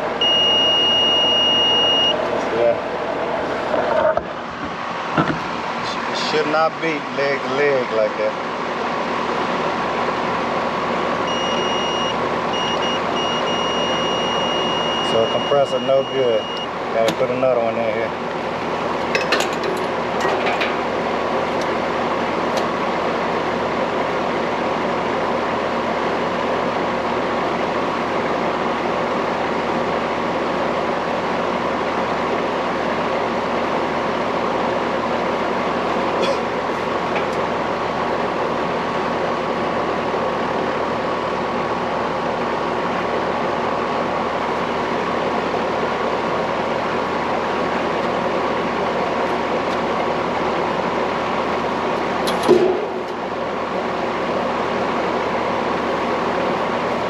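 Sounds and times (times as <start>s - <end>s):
faint hum: 0.0s - 19.5s.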